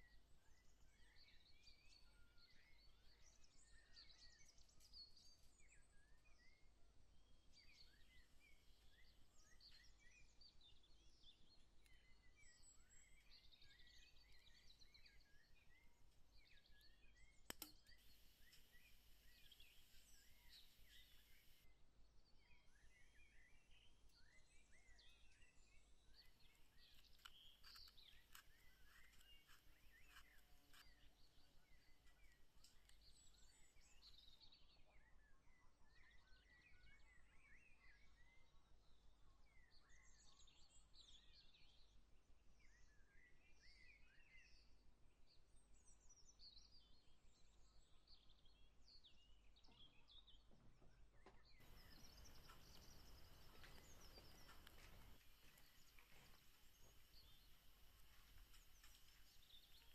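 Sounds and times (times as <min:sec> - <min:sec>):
birds chirping: 0:17.5 - 0:21.6, 0:26.2 - 0:32.4, 0:51.5 - 0:59.9
faint clicks: 0:17.5 - 0:21.6, 0:26.2 - 0:31.0, 0:51.6 - 0:59.9
soft steady hiss: 0:17.5 - 0:21.7, 0:51.6 - 0:59.9.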